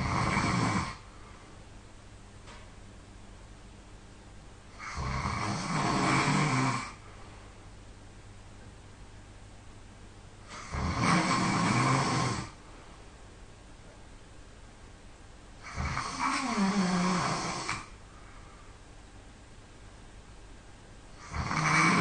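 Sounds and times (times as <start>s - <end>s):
person snoring loudly: 0.0s - 1.0s, 4.8s - 7.0s, 10.5s - 12.6s, 15.6s - 17.9s, 21.2s - 22.0s.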